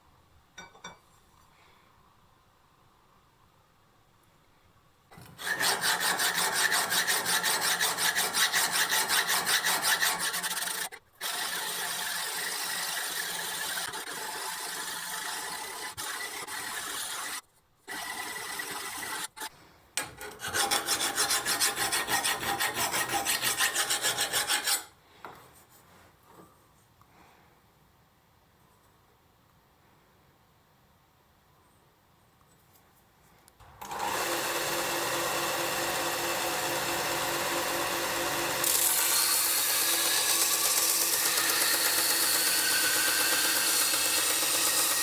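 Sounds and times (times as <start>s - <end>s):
filing a steel axe head: 5.4s - 17.4s, 18.0s - 24.9s, 36.2s - 45.0s.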